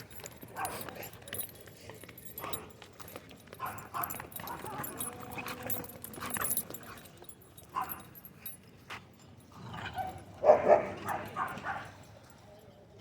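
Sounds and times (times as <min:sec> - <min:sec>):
dog barking and yipping: 0:03.6 - 0:05.0, 0:07.7 - 0:08.0, 0:10.0 - 0:11.9.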